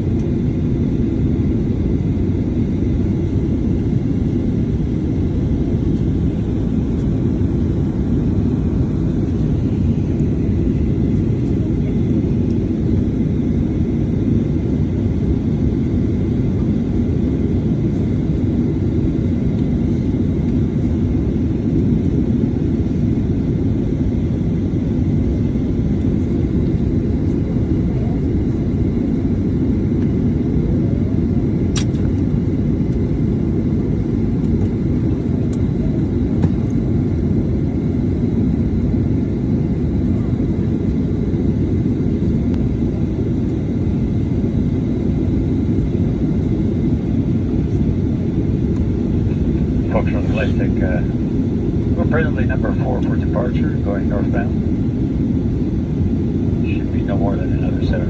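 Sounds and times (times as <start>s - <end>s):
faint steady whine: 0.0s - 58.0s
jet engines idling: 0.0s - 58.0s.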